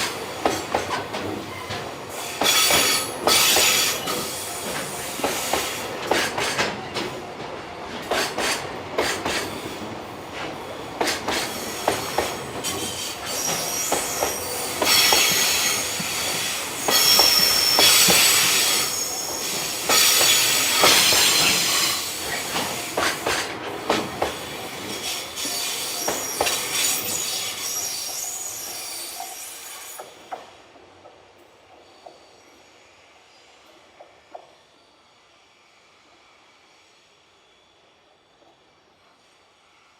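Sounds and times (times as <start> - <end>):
train wheels clacking over rail joints: 0.0 - 9.8, 10.4 - 29.4.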